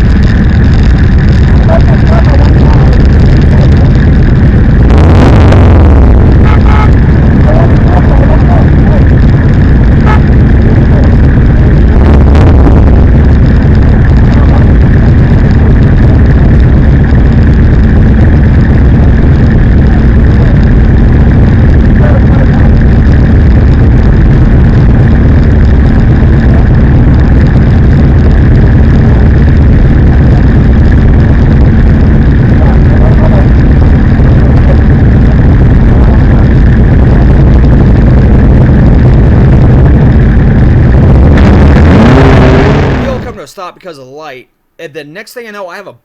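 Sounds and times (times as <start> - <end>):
motorcycle engine running: 0.0 - 43.4.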